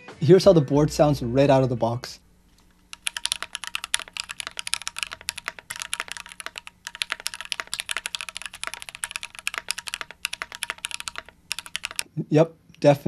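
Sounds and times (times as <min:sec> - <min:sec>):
fast typing on mechanical keyboard: 0:02.9 - 0:12.0.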